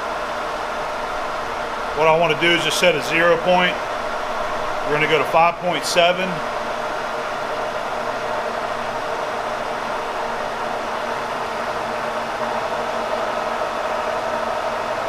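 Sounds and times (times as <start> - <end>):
milling machine humming: 0.0 - 15.0.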